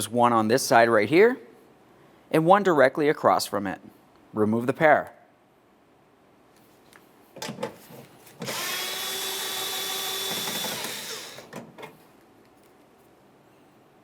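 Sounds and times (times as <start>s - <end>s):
cordless power tool whirring: 8.4s - 11.7s.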